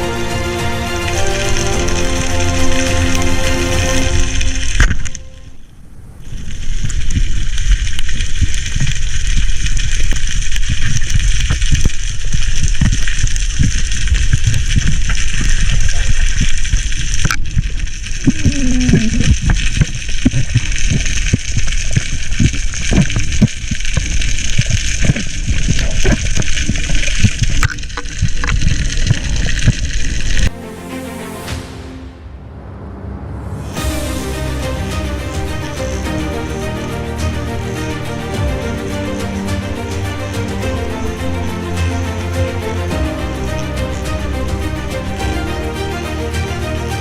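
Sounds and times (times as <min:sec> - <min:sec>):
underwater hiss and churning water: 0:00.0 - 0:32.0
underwater clicks and crackles: 0:06.2 - 0:30.5.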